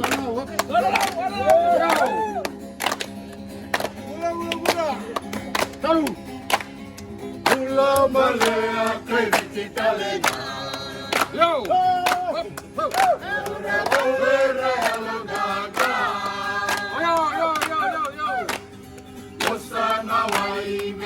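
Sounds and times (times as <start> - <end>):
group singing in harmony: 7.4 - 11.4, 13.1 - 18.0, 19.4 - 21.0.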